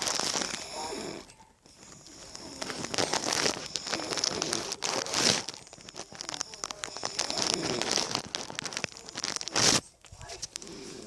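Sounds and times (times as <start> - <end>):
woman snoring: 0.0 - 5.0, 6.1 - 8.2, 10.6 - 11.0.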